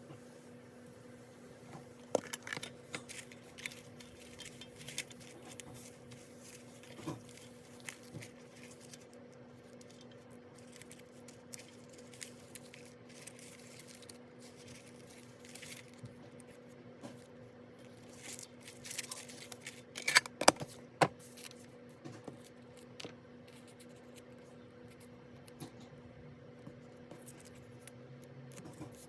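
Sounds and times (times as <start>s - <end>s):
low electrical hum: 0.0s - 29.0s
paper and stationery handling: 2.0s - 21.7s, 26.9s - 29.0s.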